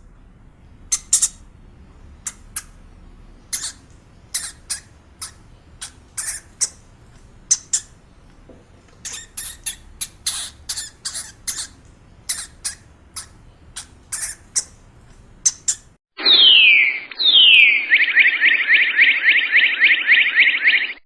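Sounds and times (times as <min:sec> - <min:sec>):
animal high squeaks: 0:03.5 - 0:06.8, 0:07.5 - 0:08.0, 0:09.0 - 0:14.8
animal falling whistles and trill: 0:16.2 - 0:21.0.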